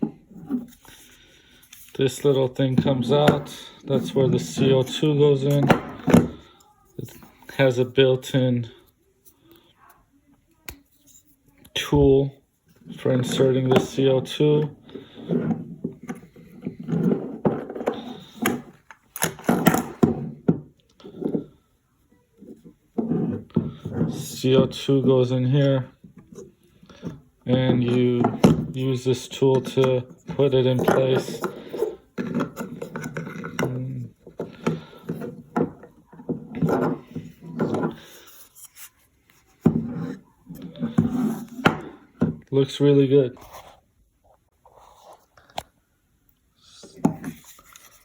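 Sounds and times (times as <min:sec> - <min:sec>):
plastic and metal parts handled: 0:15.0 - 0:21.5, 0:26.0 - 0:42.3.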